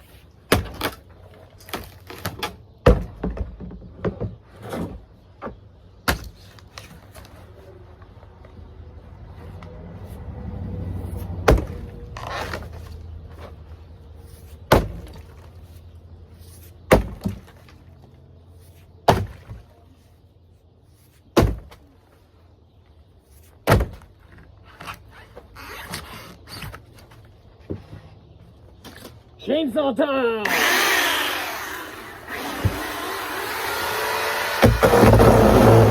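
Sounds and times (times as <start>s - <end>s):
heavy blows cracking a hot tub: 34.4s - 35.9s.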